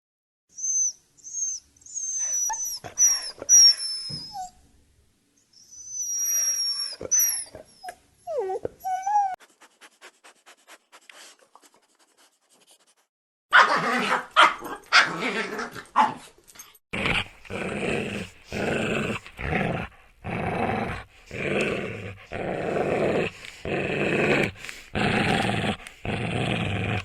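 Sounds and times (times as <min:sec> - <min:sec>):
dog whining: 0:00.6 - 0:04.6, 0:05.6 - 0:09.4.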